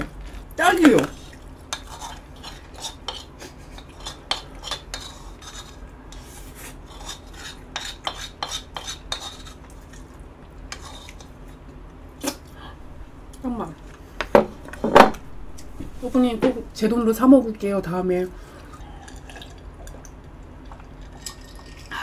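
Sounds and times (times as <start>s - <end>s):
cutlery scraping a dish: 1.7s - 9.7s, 10.7s - 11.3s.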